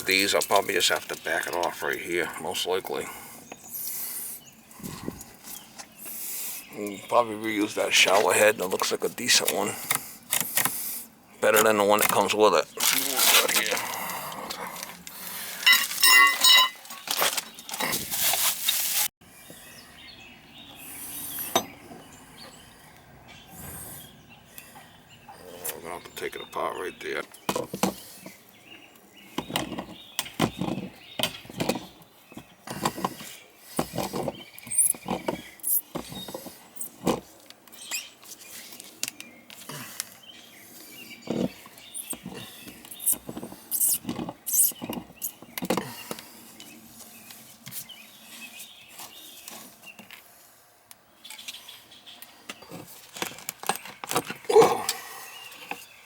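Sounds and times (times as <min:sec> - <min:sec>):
hand tools clinking on metal: 0:15.6 - 0:18.0.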